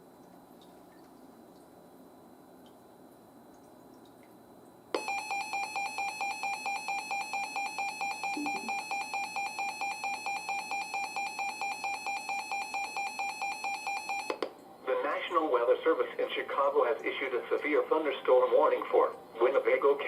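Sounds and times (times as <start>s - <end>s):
rapid electronic alarm beeping: 5.0s - 14.4s.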